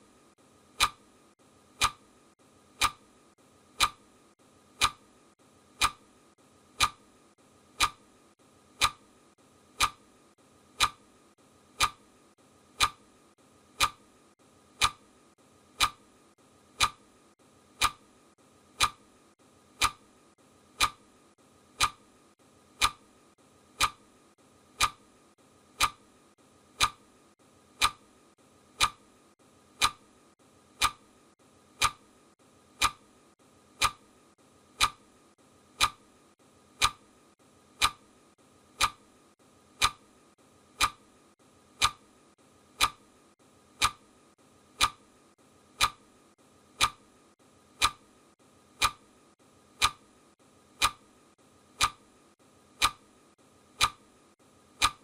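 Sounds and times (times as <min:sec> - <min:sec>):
clock ticking: 0:00.7 - 0:01.1, 0:01.7 - 0:04.1, 0:04.7 - 0:05.1, 0:05.7 - 0:15.1, 0:15.7 - 0:16.1, 0:16.7 - 0:17.1, 0:17.7 - 0:18.1, 0:18.7 - 0:19.1, 0:19.7 - 0:20.1, 0:20.7 - 0:21.1, 0:21.7 - 0:23.1, 0:23.7 - 0:24.1, 0:24.7 - 0:25.1, 0:25.7 - 0:26.1, 0:26.7 - 0:27.1, 0:27.7 - 0:28.1, 0:28.7 - 0:29.1, 0:29.7 - 0:30.1, 0:30.7 - 0:31.1, 0:31.7 - 0:32.1, 0:32.7 - 0:33.1, 0:33.7 - 0:35.1, 0:35.7 - 0:36.0, 0:36.7 - 0:37.2, 0:37.8 - 0:38.1, 0:38.7 - 0:39.0, 0:39.7 - 0:41.0, 0:41.7 - 0:42.0, 0:42.7 - 0:43.1, 0:43.7 - 0:44.1, 0:44.7 - 0:45.0, 0:45.7 - 0:46.1, 0:46.7 - 0:47.0, 0:47.8 - 0:48.2, 0:48.8 - 0:50.1, 0:50.7 - 0:52.0, 0:52.8 - 0:53.1, 0:53.7 - 0:54.1, 0:54.7 - 0:55.0.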